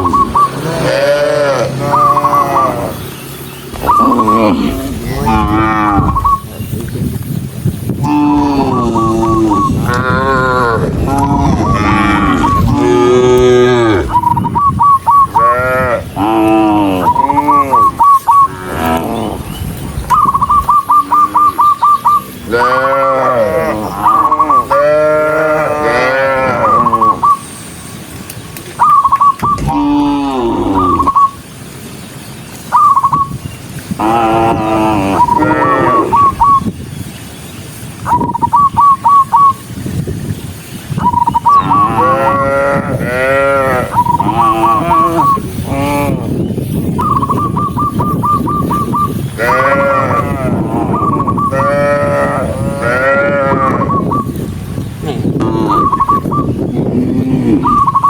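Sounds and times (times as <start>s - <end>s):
cows mooing loudly: 0.5s - 3.1s, 3.7s - 6.4s, 8.0s - 14.2s, 15.2s - 19.5s, 22.4s - 27.2s, 29.6s - 31.2s, 33.9s - 36.4s, 41.6s - 46.5s, 49.4s - 54.1s, 56.8s - 57.8s.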